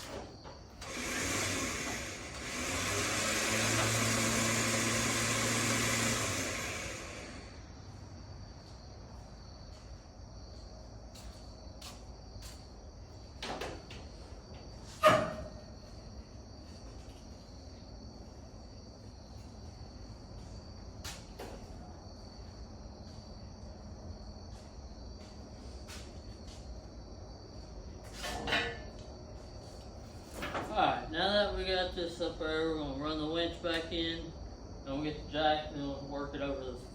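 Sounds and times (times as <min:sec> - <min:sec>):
insects chirring: 0:03.8 - 0:36.9.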